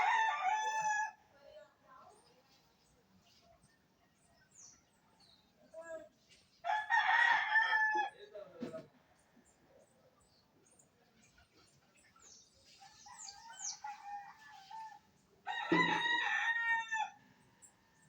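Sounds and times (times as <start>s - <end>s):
rooster crowing: 0.0s - 1.2s, 6.7s - 8.2s, 15.5s - 17.2s
small birds chirping: 1.4s - 6.8s, 8.1s - 15.8s.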